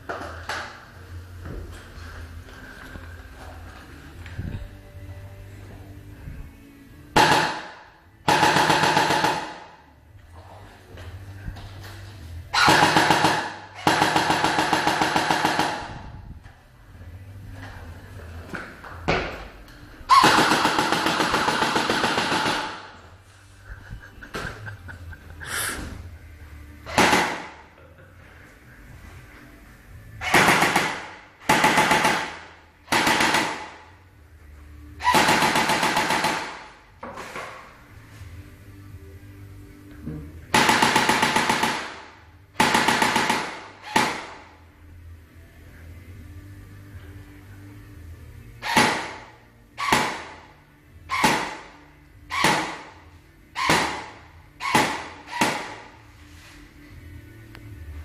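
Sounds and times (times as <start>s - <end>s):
airsoft gun firing bursts: 8.3s - 9.7s, 12.6s - 15.9s, 20.1s - 22.9s, 30.3s - 33.8s, 35.1s - 36.7s, 40.5s - 42.0s, 42.6s - 44.4s
airsoft gun shots with echo: 26.9s - 27.6s, 30.2s - 33.8s, 48.6s - 50.4s, 51.1s - 52.9s, 53.6s - 55.9s.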